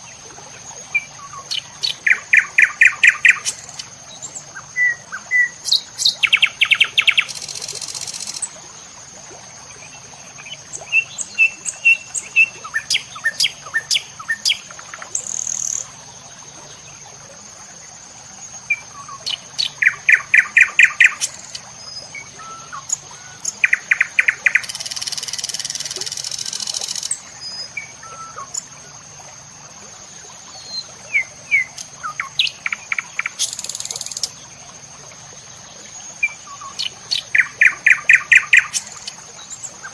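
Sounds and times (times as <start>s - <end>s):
songbirds chirping and trilling: 0.0s - 8.5s, 9.8s - 17.2s, 18.7s - 39.9s.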